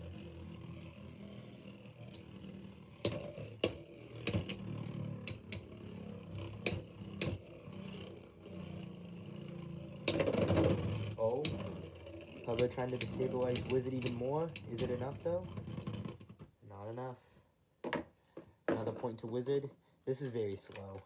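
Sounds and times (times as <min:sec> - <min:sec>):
spinning tops whirring: 0:00.0 - 0:16.0.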